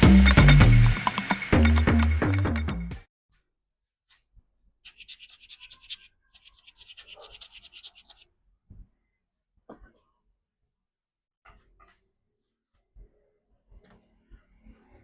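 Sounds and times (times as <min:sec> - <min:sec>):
faint scrubbing strokes: 0:04.9 - 0:08.2.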